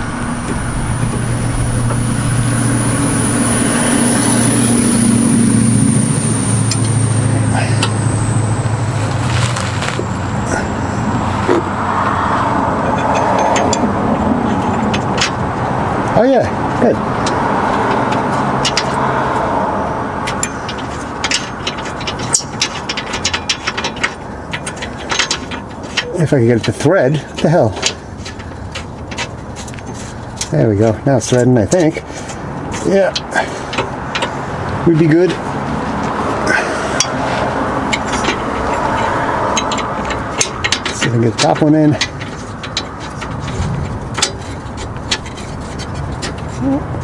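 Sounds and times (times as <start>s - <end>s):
machine low hum: 0.0s - 9.2s
high-pitched whine: 0.0s - 14.4s
mechanical background hum: 0.0s - 47.0s.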